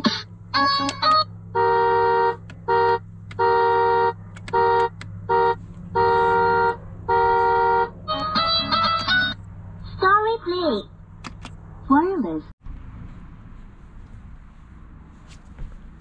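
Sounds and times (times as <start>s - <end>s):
electronic horn beeping: 0.6s - 9.1s.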